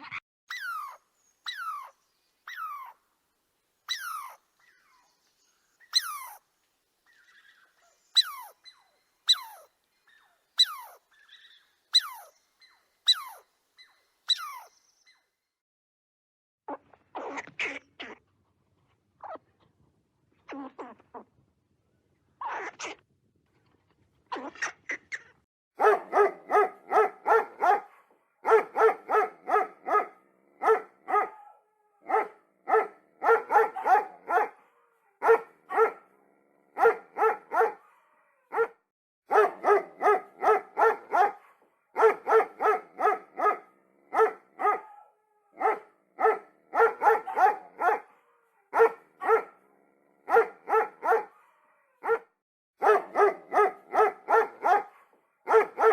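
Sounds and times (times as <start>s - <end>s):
dog barking: 25.8s - 36.1s, 36.7s - 55.9s.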